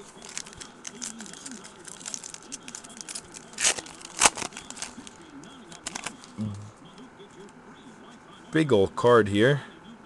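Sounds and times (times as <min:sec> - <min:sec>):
foil wrapper crinkling: 0:00.0 - 0:06.3.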